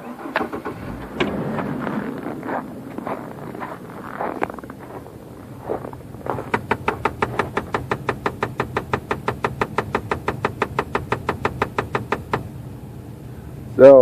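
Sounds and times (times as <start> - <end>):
engine running hum: 0.0 - 14.0
rapid even clicking: 5.8 - 12.5.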